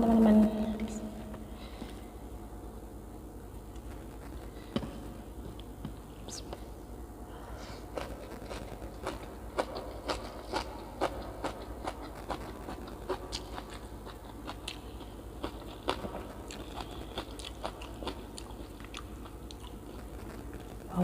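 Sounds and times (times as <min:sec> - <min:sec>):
crunchy bites and chewing: 0:07.9 - 0:20.6.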